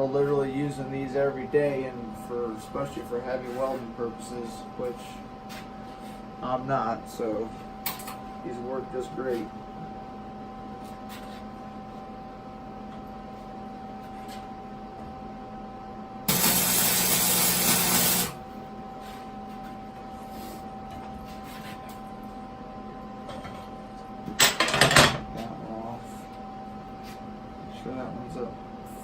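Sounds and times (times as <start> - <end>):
steady machine hum: 0.0 - 24.6
loud even hiss: 16.3 - 18.4.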